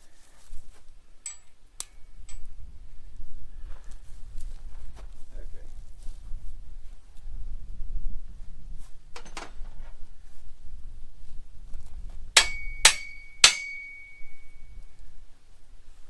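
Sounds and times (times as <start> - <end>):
hammer striking metal: 12.4 - 14.6.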